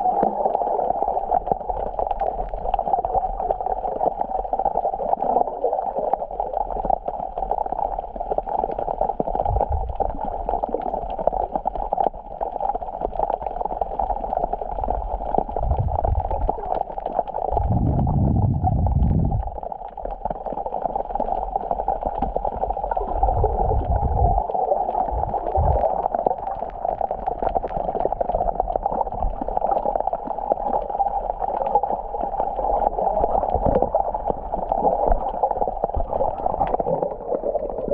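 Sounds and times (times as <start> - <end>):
low rumbles: 15.6 - 16.5, 17.5 - 19.6, 23.3 - 24.4.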